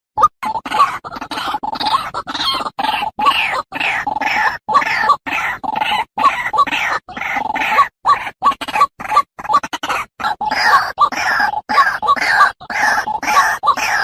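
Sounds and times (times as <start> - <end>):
bird harsh calls: 0.4 - 14.0.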